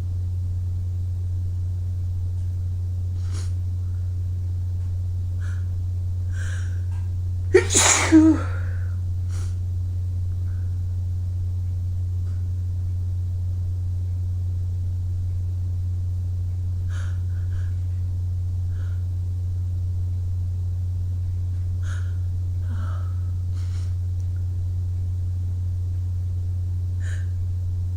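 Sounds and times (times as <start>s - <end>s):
steady low hum: 0.0s - 27.9s
faint breathing and sniffing: 3.1s - 4.1s, 21.8s - 24.0s
person sneezing: 7.6s - 9.5s.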